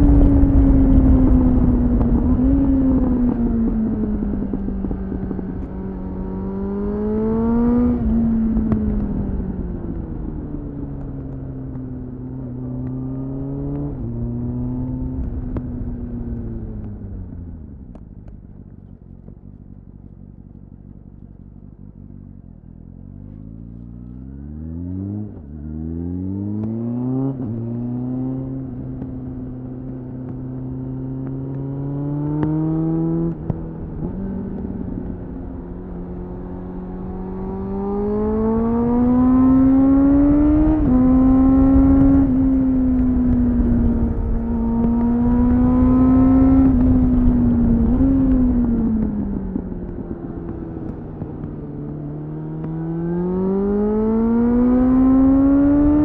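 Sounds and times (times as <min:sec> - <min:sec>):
wind rushing over microphone: 0:00.0 - 0:06.9, 0:33.0 - 0:51.0
motorcycle engine accelerating: 0:00.0 - 0:56.0.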